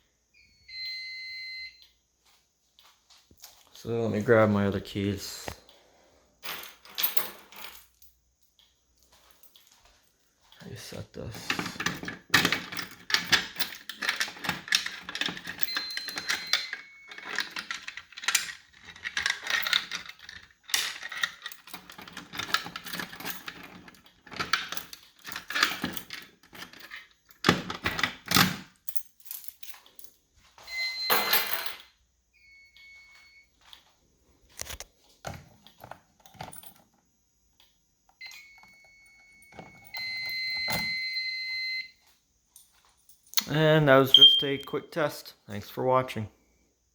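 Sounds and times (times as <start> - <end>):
keys jangling: 11.4 - 30.2
short high electronic beeps: 44.1 - 44.7.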